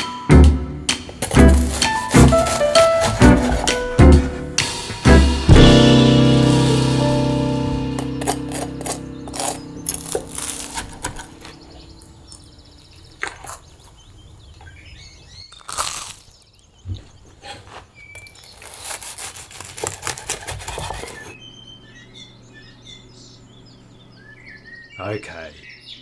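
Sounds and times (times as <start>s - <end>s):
crisp crunches and knocks: 1.0s - 3.8s, 7.7s - 14.7s, 15.5s - 21.4s
birds chirping: 5.1s - 26.0s.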